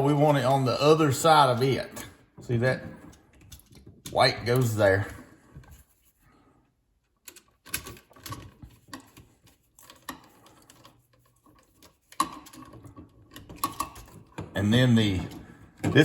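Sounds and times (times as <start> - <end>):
hands clicking and scraping receptacle: 7.1 - 16.0.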